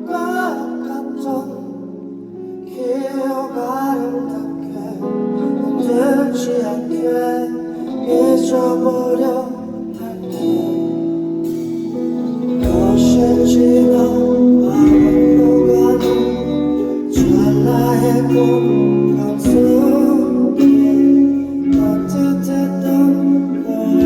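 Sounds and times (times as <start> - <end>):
band playing slow pop ballad: 0.0 - 24.0
deep bass notes: 12.6 - 24.0.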